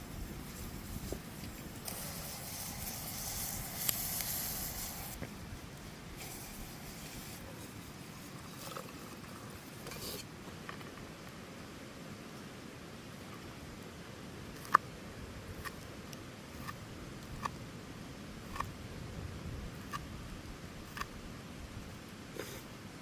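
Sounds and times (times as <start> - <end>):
food hissing and sizzling: 0.0 - 5.2, 6.2 - 7.6
fire crackling: 0.0 - 11.4.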